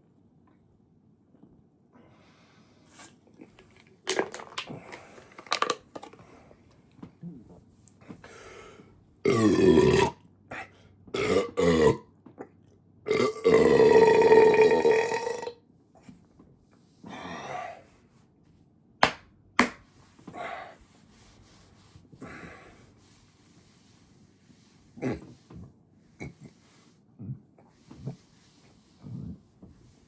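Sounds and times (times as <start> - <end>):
person belching: 9.2 - 10.2, 11.2 - 12.0, 13.1 - 15.6.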